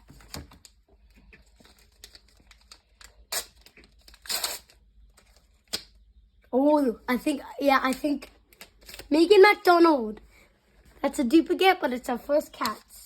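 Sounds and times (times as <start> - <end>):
wrapper crinkling: 0.0 - 5.7
wrapper ripping: 1.5 - 5.4.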